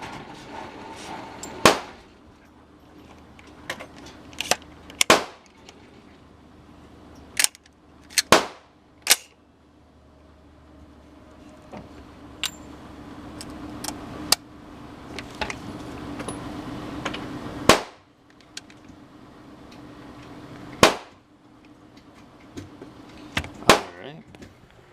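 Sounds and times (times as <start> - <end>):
loud rifle shots: 1.6 - 2.0, 5.0 - 5.4, 8.2 - 9.2, 17.7 - 18.0, 20.8 - 21.2, 23.6 - 24.0
distant gunshot cracks and clicks: 5.0 - 5.4, 20.8 - 21.2.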